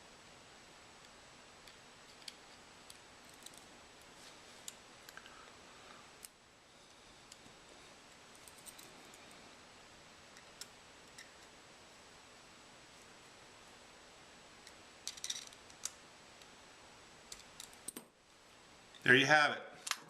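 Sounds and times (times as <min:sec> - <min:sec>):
steady low hiss: 0:00.0 - 0:20.0.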